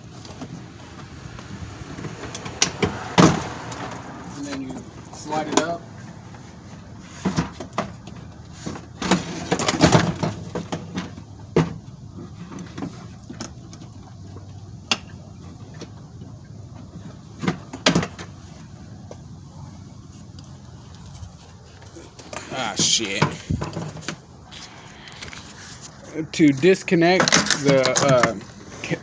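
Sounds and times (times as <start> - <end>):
rustling: 23.2 - 28.8.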